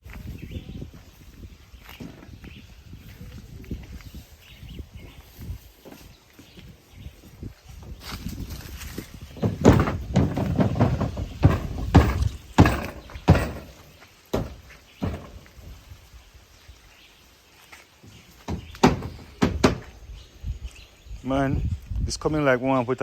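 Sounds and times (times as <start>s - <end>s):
knocks and thuds: 9.3s - 15.8s, 18.4s - 20.0s.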